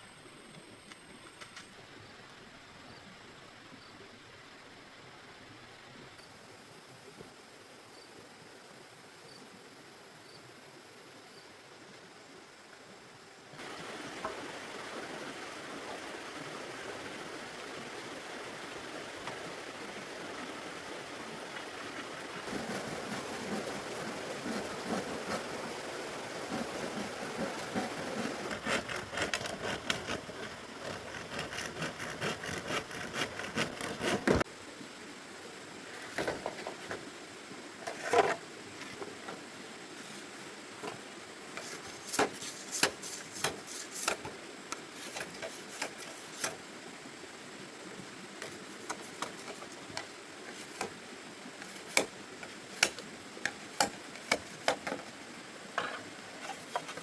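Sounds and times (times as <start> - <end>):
hand sawing wood: 26.5 - 34.4.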